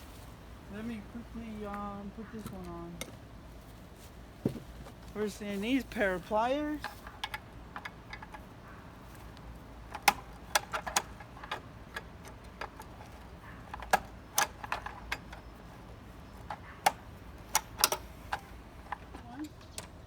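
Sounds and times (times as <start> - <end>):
pliers clicking on metal: 16.5 - 18.5.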